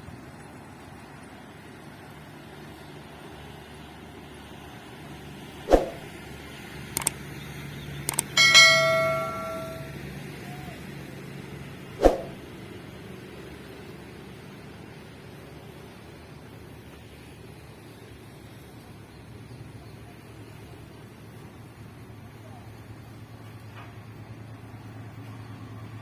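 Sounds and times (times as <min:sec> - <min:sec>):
metallic clang ringing: 0:08.2 - 0:10.0
sharp knocks: 0:08.4 - 0:09.9.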